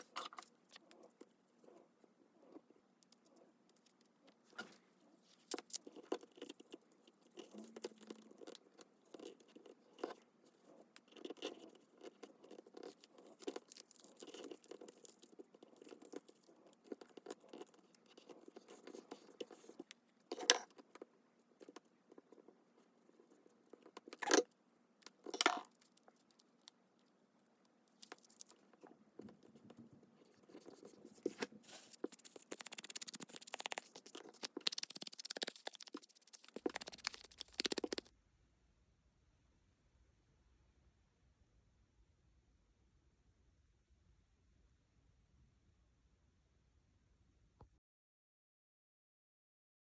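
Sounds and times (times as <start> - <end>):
paper rustling: 30.4 - 38.1.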